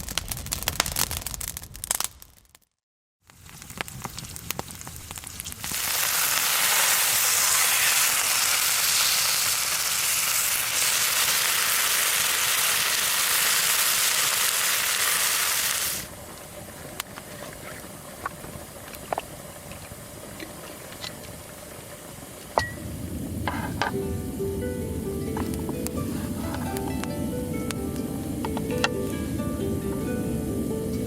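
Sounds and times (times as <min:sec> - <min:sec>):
wood fire crackling: 0:00.0 - 0:02.6, 0:03.3 - 0:29.2
chicken sizzling in a pan: 0:03.3 - 0:27.6.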